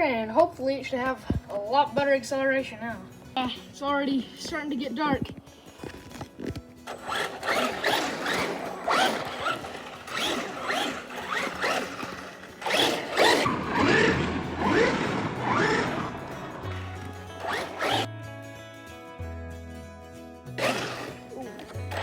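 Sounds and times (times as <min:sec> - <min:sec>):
toy truck motor whining: 0:06.9 - 0:18.1, 0:20.6 - 0:22.0.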